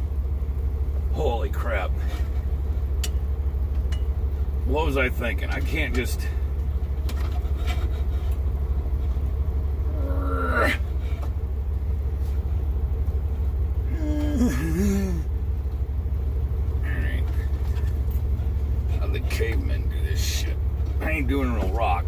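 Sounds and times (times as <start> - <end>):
man groaning with strain: 9.9 - 11.0, 13.8 - 15.4.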